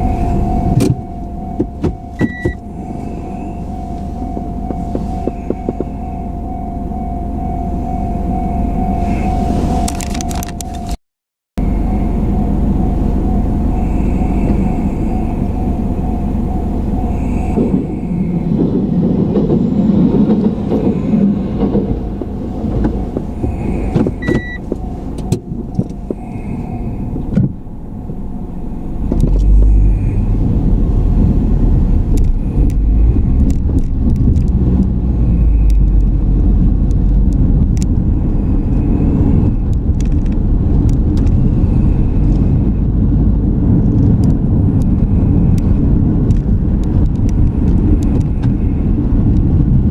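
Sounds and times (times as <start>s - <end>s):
car engine and road rumble: 0.0s - 11.0s, 11.6s - 49.9s.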